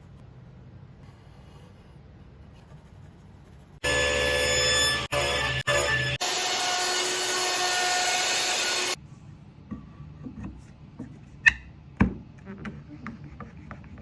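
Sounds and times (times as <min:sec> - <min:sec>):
power saw cutting wood: 0:03.8 - 0:09.0.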